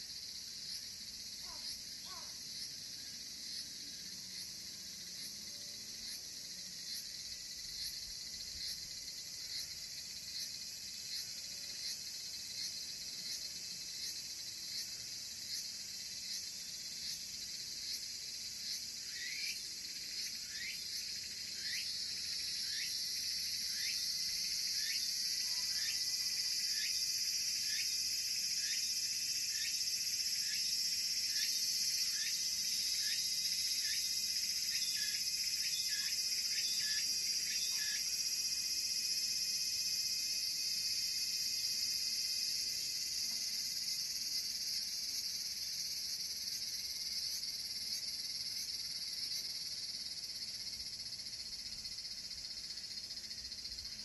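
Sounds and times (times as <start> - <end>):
cicadas singing: 0.0 - 54.0.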